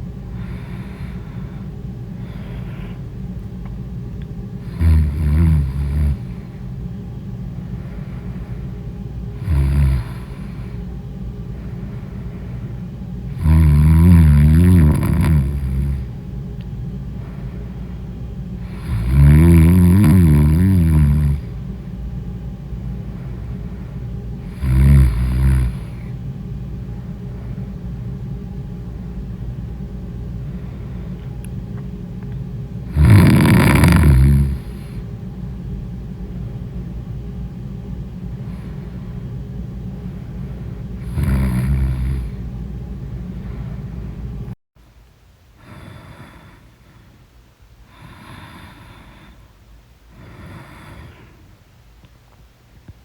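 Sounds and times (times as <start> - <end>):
steady low hum: 0.0 - 53.0
person snoring loudly: 4.6 - 6.5, 9.4 - 10.8, 13.3 - 16.2, 18.6 - 21.6, 24.4 - 26.1, 32.9 - 35.0, 41.0 - 42.4, 47.9 - 49.4.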